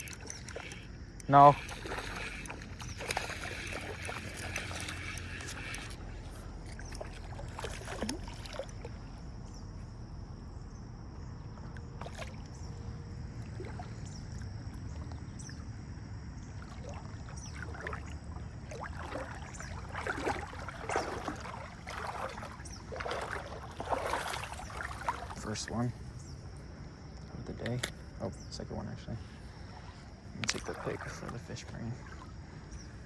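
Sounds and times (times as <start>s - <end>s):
fish splashing at bank: 0.0s - 9.0s, 16.6s - 25.8s
river water rumble: 0.0s - 33.0s.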